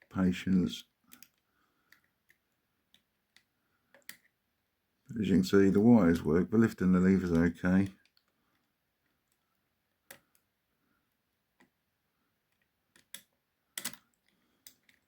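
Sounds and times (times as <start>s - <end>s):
small metallic lock picking clicks: 1.1s - 4.4s, 12.5s - 15.0s.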